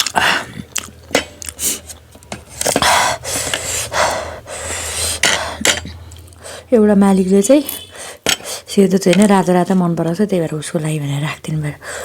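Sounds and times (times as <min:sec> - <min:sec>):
woman breathing hard: 0:02.7 - 0:05.8, 0:11.8 - 0:12.0.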